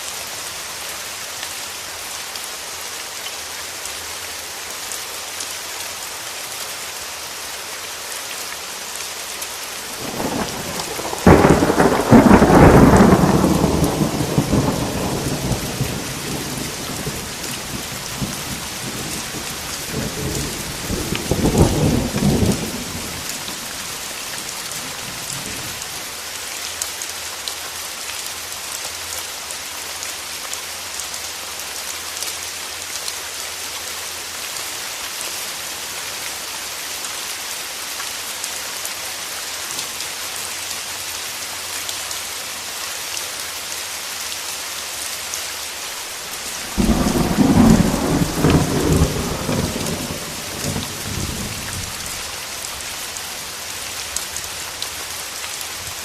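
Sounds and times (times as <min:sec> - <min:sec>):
steady rain: 0:00.0 - 0:56.0
thunder rumbling: 0:10.0 - 0:24.1, 0:46.5 - 0:52.3.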